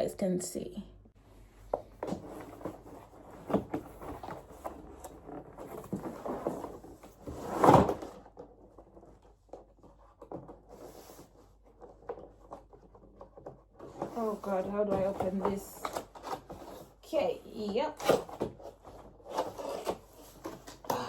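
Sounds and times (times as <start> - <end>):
rustling scrape: 1.4 - 17.3.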